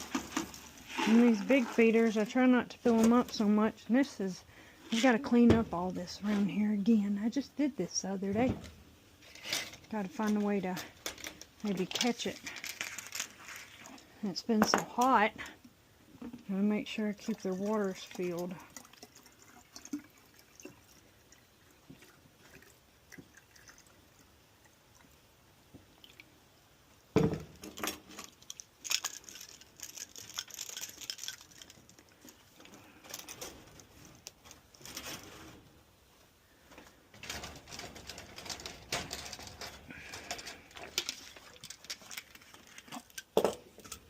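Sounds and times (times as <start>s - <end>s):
water pouring and splashing: 0.0s - 3.5s, 16.8s - 25.2s, 40.1s - 44.0s
knocks and clatter of containers: 0.0s - 3.6s, 4.9s - 6.4s, 14.5s - 15.2s, 27.2s - 30.0s, 36.7s - 44.0s.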